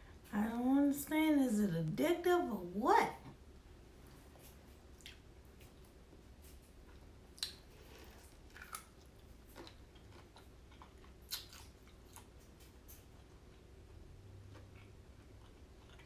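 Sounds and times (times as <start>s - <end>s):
person chewing food: 4.4s - 16.0s.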